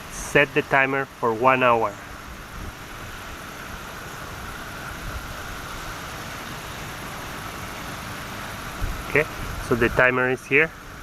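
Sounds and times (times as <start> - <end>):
wind rumbling on microphone: 2.0 - 6.2, 8.7 - 10.2.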